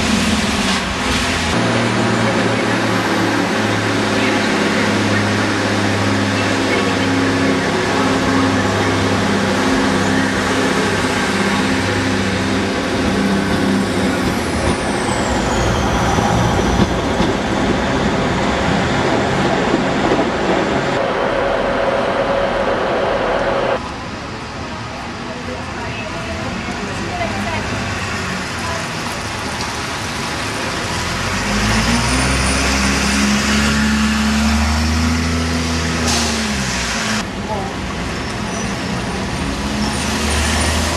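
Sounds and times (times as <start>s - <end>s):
heavy vehicle engine drone: 0.0s - 24.5s
street noise: 0.0s - 40.9s
diesel engine humming: 19.4s - 23.8s.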